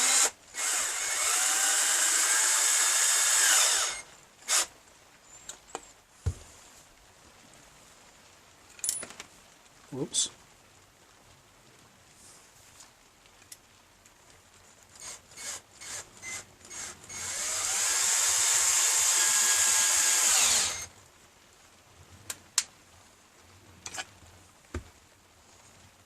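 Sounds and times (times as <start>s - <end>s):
cordless drill driving screw: 0.0s - 4.7s, 15.0s - 20.9s.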